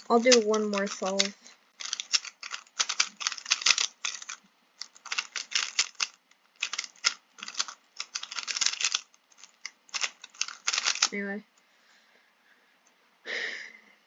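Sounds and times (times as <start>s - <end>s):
puzzle cube layers clacking: 0.0s - 11.2s.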